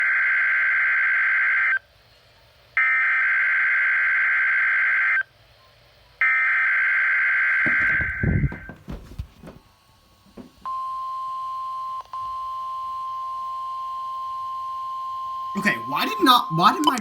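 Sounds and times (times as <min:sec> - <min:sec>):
low thump: 0:07.7 - 0:09.6, 0:10.3 - 0:10.7.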